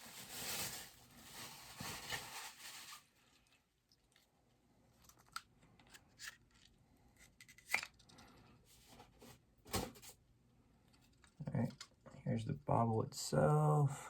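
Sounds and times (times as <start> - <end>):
packaging rustling: 0.0 - 3.2.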